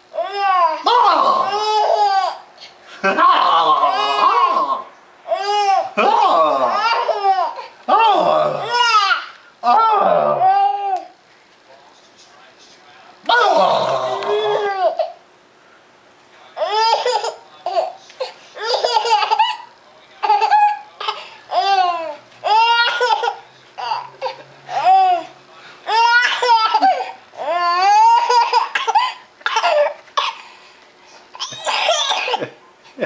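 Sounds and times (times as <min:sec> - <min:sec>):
small child laughing: 0:31.4 - 0:32.6.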